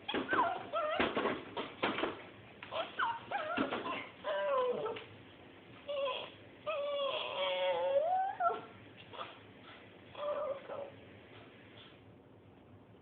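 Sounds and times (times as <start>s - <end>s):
animal making wavering calls: 5.9s - 9.4s.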